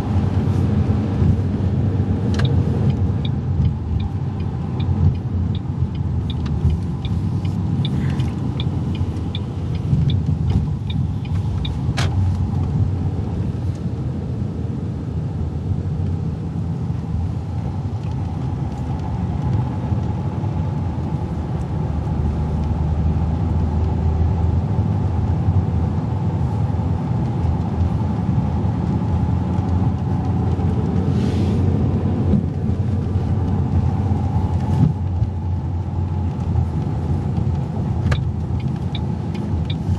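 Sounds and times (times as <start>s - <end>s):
car road noise rumble: 0.0s - 39.9s
light regular ticking: 2.2s - 12.9s, 31.8s - 39.9s.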